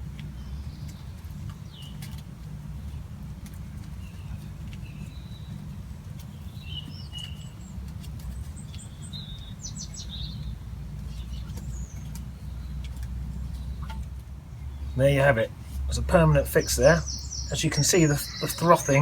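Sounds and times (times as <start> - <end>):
small birds chirping: 0.0 - 19.0
steady low rumble: 8.6 - 19.0.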